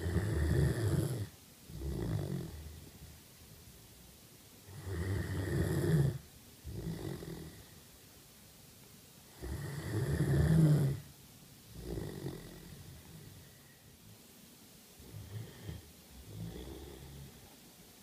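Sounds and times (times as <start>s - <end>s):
dog snoring: 0.0s - 3.2s, 4.6s - 7.8s, 9.3s - 11.1s, 11.7s - 13.6s, 15.0s - 17.5s.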